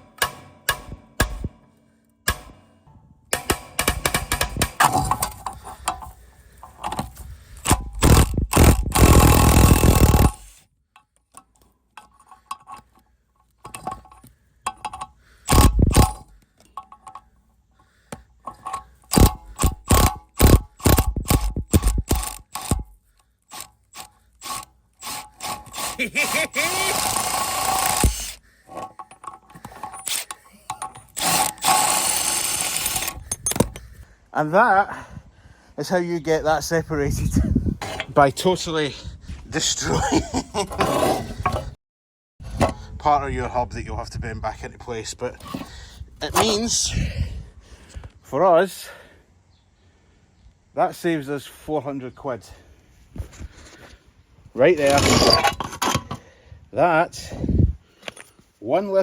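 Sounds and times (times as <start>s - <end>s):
power tool running: 7.7s - 10.6s, 24.4s - 28.4s, 31.1s - 33.2s.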